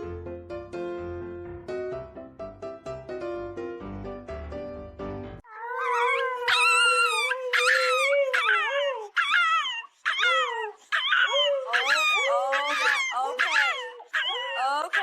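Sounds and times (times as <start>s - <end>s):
piano music: 0.0s - 5.5s
dog howling and whining: 5.4s - 15.0s.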